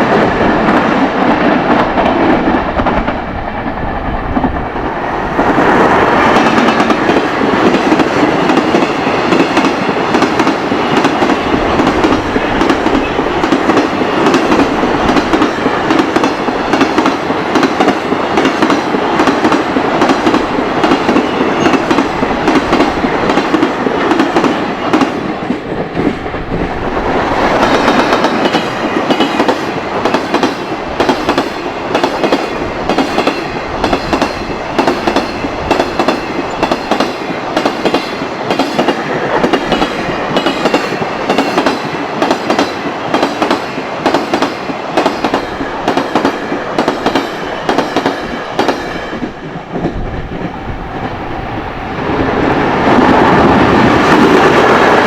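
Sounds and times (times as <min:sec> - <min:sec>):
train rolling rumble: 0:00.0 - 0:55.0.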